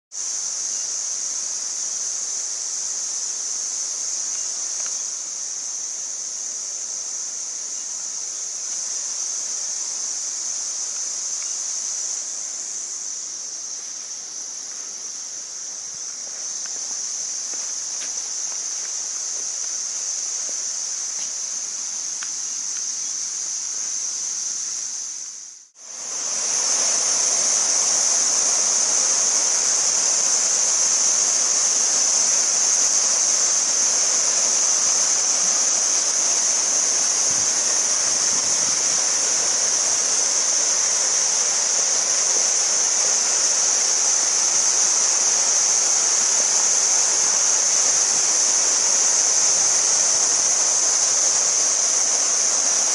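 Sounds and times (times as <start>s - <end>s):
high-pitched insect drone: 0.1s - 52.9s
waterfall rushing: 25.8s - 52.9s.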